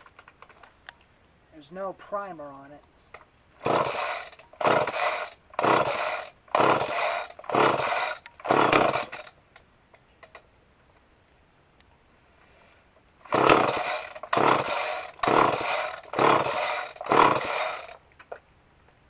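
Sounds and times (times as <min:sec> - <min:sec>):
chainsaw starter rope pulls: 0:03.1 - 0:09.6, 0:10.2 - 0:10.4, 0:13.2 - 0:18.4.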